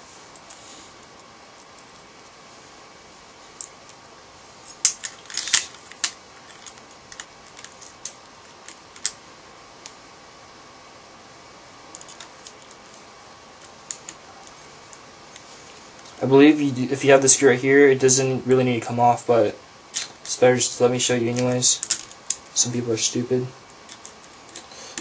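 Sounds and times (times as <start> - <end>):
small metal and plastic parts clicking: 4.8 - 9.2, 11.9 - 12.9, 13.6 - 15.4, 21.4 - 22.4, 23.8 - 25.0.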